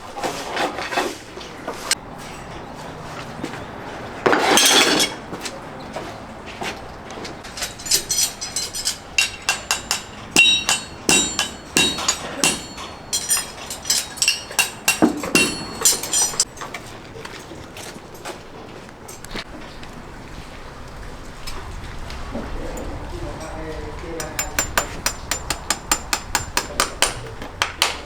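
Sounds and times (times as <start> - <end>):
hammer ringing on metal: 7.6 - 16.4, 24.2 - 27.4.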